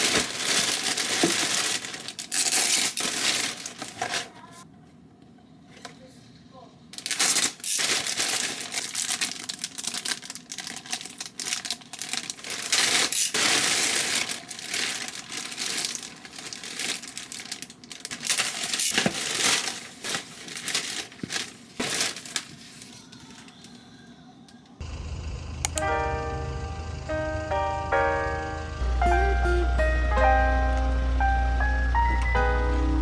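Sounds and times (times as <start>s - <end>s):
packaging crinkling: 0.0s - 4.6s, 7.0s - 23.9s.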